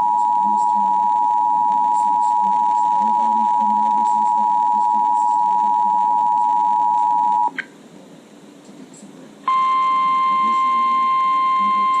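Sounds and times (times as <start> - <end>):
low radio hiss: 0.0 - 12.0
two-tone alert signal: 9.5 - 12.0.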